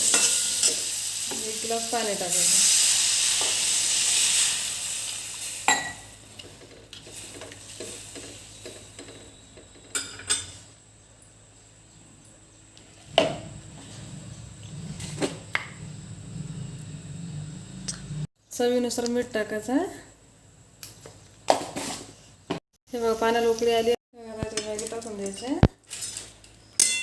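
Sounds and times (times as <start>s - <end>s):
water sizzling in hot pan: 0.0s - 6.3s.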